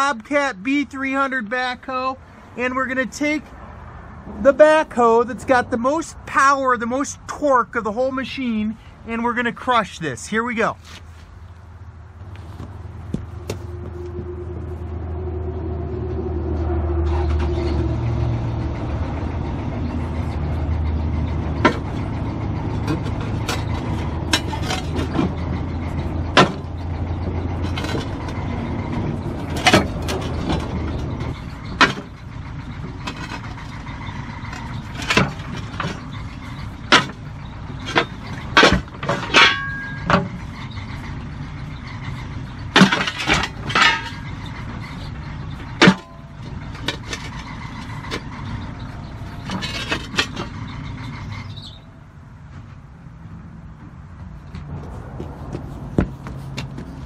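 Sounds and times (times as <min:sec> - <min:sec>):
diesel engine running under load: 0:00.0 - 0:09.9, 0:11.0 - 0:57.0
bucket clanking on steel plate: 0:22.8 - 0:25.4, 0:29.4 - 0:31.1, 0:36.9 - 0:37.2, 0:37.8 - 0:40.4, 0:42.7 - 0:44.6, 0:45.6 - 0:48.3.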